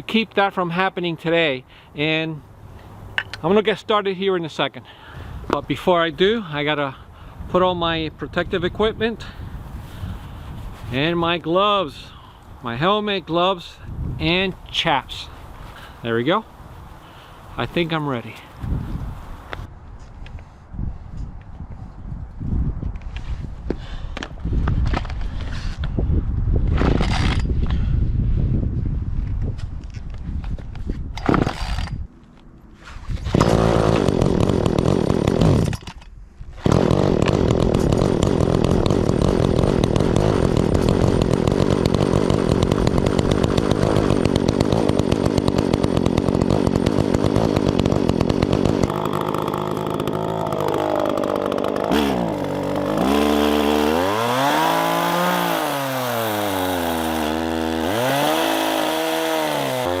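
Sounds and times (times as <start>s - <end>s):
chainsaw cutting logs: 31.3s - 32.0s, 33.2s - 60.0s.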